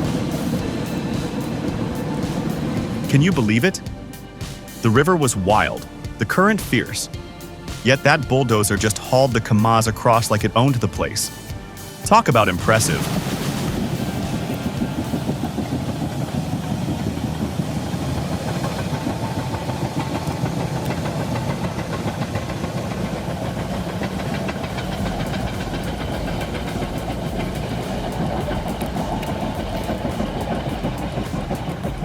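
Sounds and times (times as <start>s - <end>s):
heavy machine engine running: 0.0s - 9.2s, 11.4s - 32.0s.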